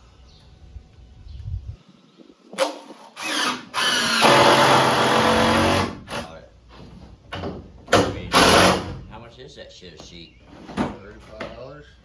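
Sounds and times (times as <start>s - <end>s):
power drill driving a screw: 2.6s - 6.3s, 8.3s - 9.0s.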